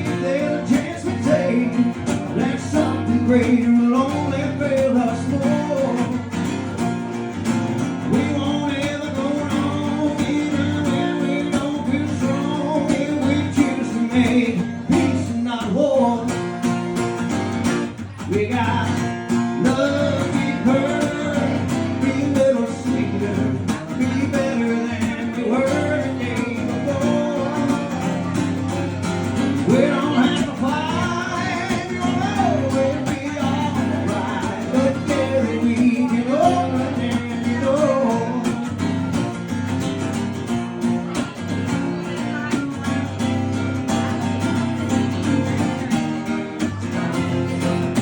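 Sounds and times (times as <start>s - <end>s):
acoustic guitar strumming: 0.0s - 48.0s.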